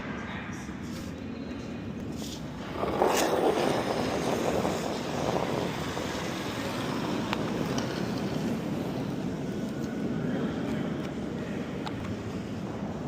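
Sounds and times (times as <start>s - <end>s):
brooms sweeping ice: 2.1s - 7.1s
curling stone rumbling on ice: 2.4s - 9.2s.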